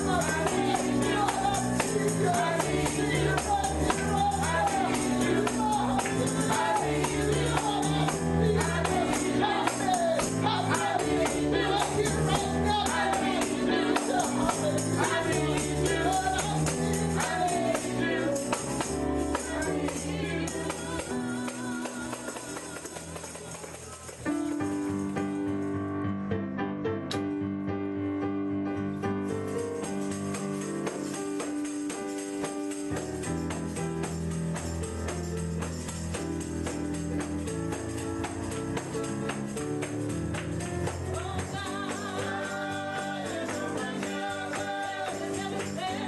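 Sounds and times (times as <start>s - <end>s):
gospel singing: 0.0s - 24.3s, 37.2s - 46.0s
tambourine shaken and struck: 0.0s - 25.6s, 29.2s - 46.0s.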